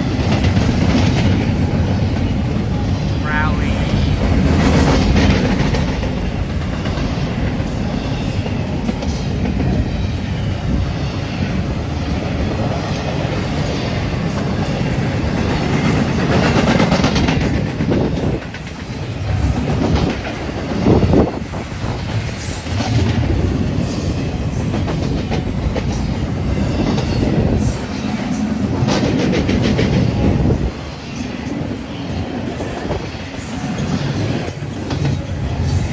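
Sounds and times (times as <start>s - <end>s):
freight train rumbling past: 0.0s - 35.9s.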